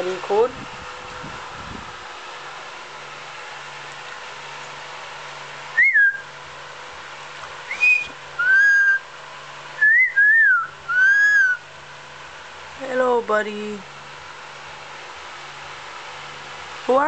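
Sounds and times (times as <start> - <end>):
low steady hum: 0.0 - 17.0
bird whistling: 5.8 - 6.3, 7.7 - 9.1, 9.8 - 11.6.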